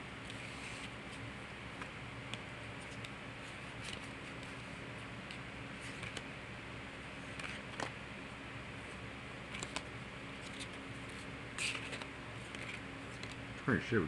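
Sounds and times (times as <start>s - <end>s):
cards clicking and rustling: 1.8s - 4.6s, 5.2s - 6.3s, 7.3s - 8.0s, 9.5s - 13.4s.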